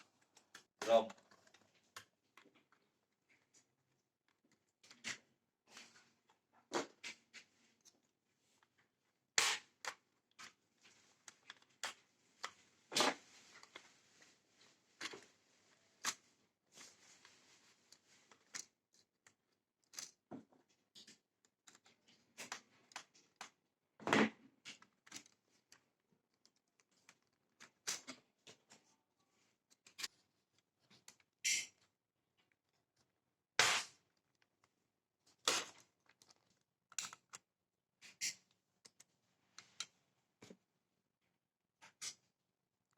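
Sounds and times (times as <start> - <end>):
tools clicking and tapping on laptop: 18.0 - 23.7, 29.6 - 40.6.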